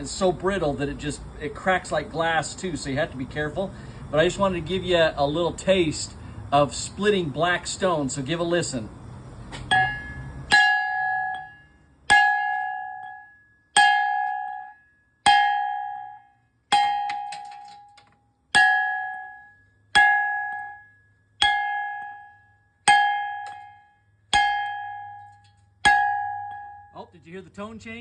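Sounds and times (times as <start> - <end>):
hammer striking granite: 22.9 - 26.9.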